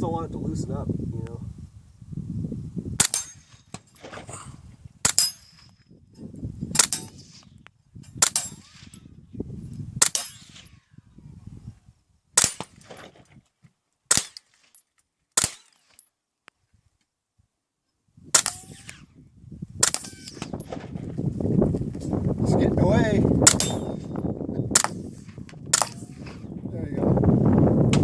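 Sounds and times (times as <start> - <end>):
suppressed gunshots: 3.0 - 5.5, 6.7 - 7.5, 8.2 - 9.0, 12.4 - 13.2, 14.1 - 14.6, 15.4 - 15.9, 18.3 - 19.1, 19.8 - 21.0, 23.4 - 26.5.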